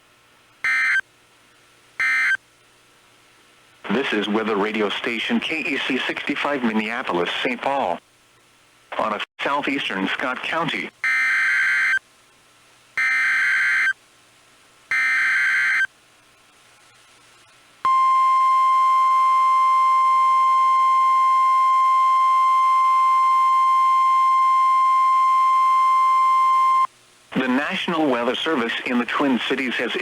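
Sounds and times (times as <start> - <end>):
steady warning alarm tone: 0.7 - 1.0, 2.0 - 2.4, 11.0 - 12.0, 13.0 - 14.0, 14.9 - 15.9, 17.9 - 26.9.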